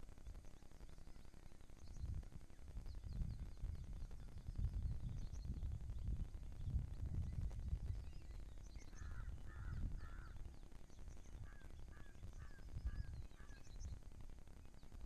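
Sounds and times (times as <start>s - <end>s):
small birds chirping: 0.0s - 15.0s
crow cawing: 8.9s - 10.4s, 11.4s - 12.6s.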